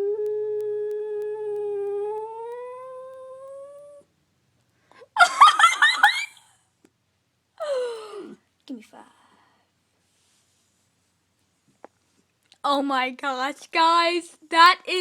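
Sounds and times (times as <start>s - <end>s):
dog howling: 0.0s - 4.0s.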